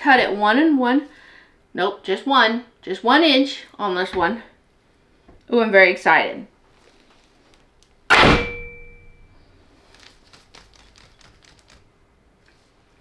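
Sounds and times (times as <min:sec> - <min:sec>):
loud metal clang: 0:08.1 - 0:09.3.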